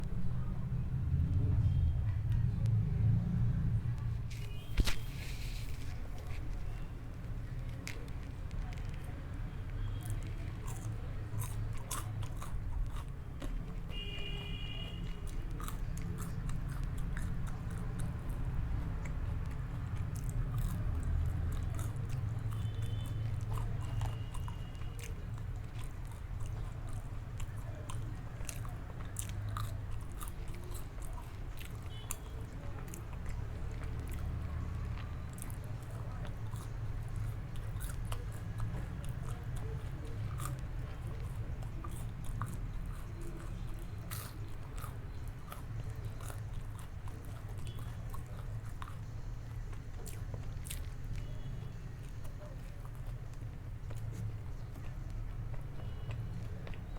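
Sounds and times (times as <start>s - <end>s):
chewing food: 0.0s - 56.9s
crisp crunches from biting: 4.3s - 9.0s.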